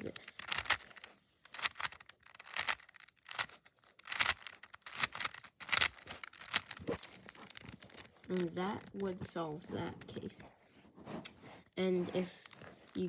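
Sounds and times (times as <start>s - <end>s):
puzzle cube plastic clacks: 0.0s - 10.4s, 12.1s - 13.0s.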